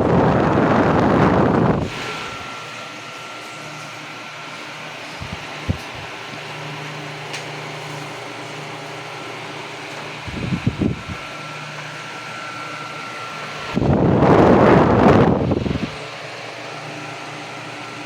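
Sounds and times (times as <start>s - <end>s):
loud rushing noise: 0.0s - 2.6s
table fan running: 0.0s - 18.0s.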